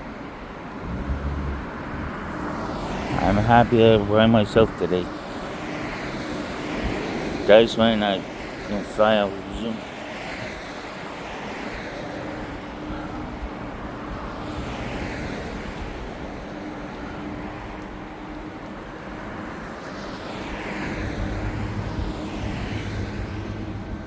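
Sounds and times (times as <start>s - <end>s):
vehicles passing by: 0.0s - 24.0s
steady low hum: 0.8s - 4.5s.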